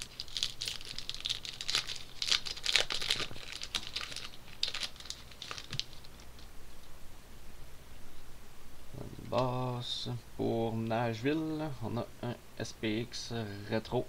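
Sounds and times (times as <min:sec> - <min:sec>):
wrapper being torn and crinkled: 0:00.0 - 0:06.3.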